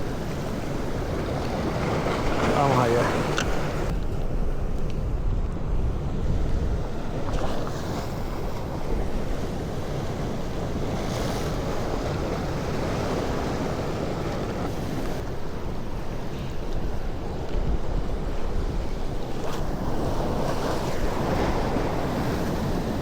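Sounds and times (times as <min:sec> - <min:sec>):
sea waves washing: 0:00.0 - 0:23.0
wind buffeting microphone: 0:00.0 - 0:23.0.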